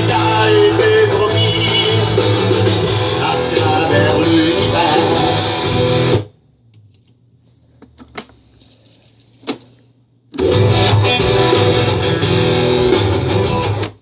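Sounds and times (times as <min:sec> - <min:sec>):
guitar-led music: 0:00.0 - 0:06.3, 0:10.4 - 0:14.0.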